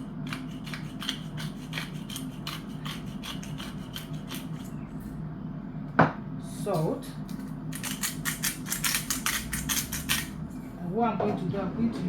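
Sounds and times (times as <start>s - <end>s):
steady low hum: 0.0s - 12.0s
pepper mill grinding: 0.3s - 4.8s, 7.3s - 10.4s.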